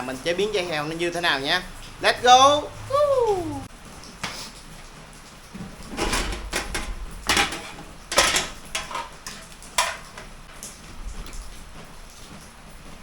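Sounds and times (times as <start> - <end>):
kitchenware clattering: 6.0 - 10.3.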